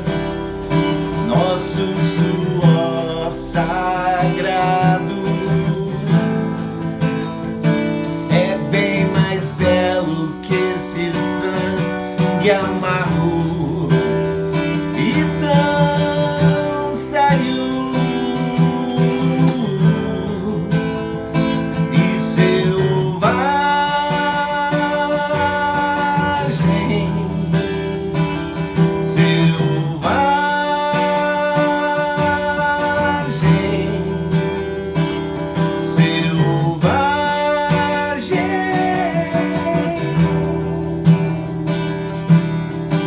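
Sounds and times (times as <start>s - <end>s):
man singing held notes: 0.0s - 6.8s, 21.7s - 42.2s
acoustic guitar strummed: 0.0s - 43.0s.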